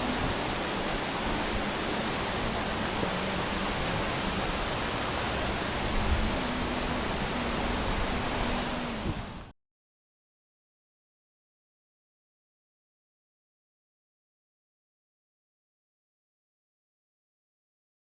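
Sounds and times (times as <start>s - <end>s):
waterfall rushing: 0.0s - 9.5s.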